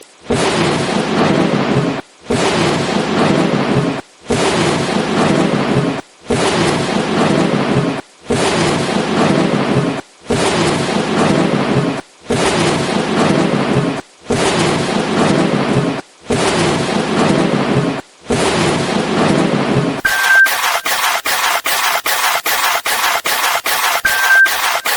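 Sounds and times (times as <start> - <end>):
high beep: 20.0 - 24.9
rapid clicking: 20.0 - 24.9.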